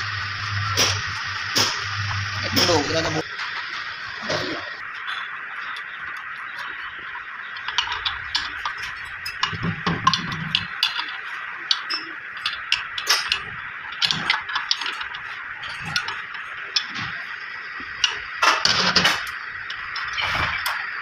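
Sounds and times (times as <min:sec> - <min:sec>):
steady hiss: 0:00.0 - 0:21.0
tools and metal parts clinking: 0:04.9 - 0:21.0.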